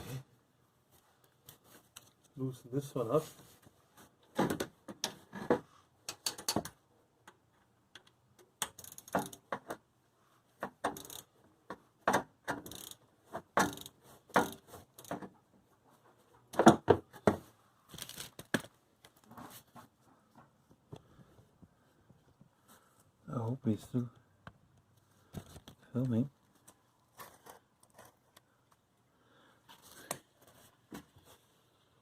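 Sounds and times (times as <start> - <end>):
ratchet wrench clicking: 8.6 - 9.4, 10.9 - 11.3, 12.6 - 13.0, 13.6 - 15.1.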